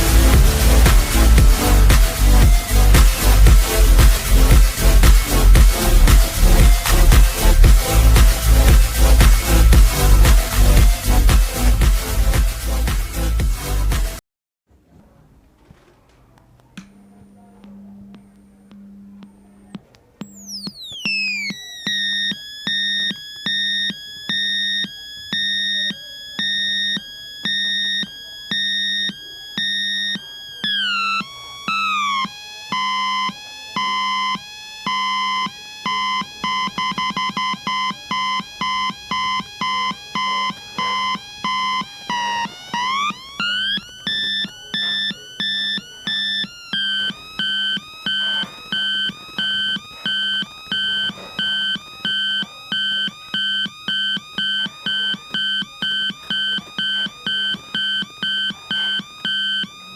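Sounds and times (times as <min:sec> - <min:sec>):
electronic two-tone siren warble: 0:20.2 - 0:59.9.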